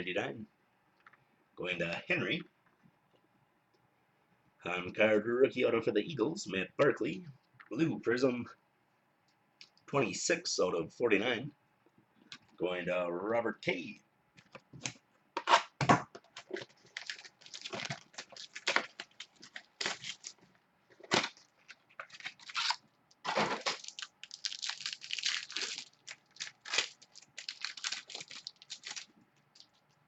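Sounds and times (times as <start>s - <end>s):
wrappers crinkling and tearing: 16.4s - 30.0s.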